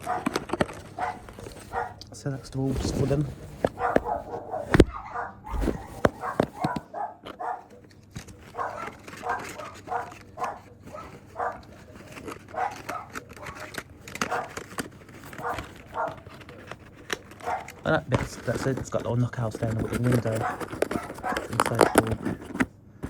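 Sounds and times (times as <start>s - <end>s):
dog barking: 0.0s - 2.0s, 3.8s - 7.8s, 8.5s - 11.8s, 12.5s - 14.6s, 15.4s - 16.4s, 17.4s - 17.9s, 20.3s - 22.1s.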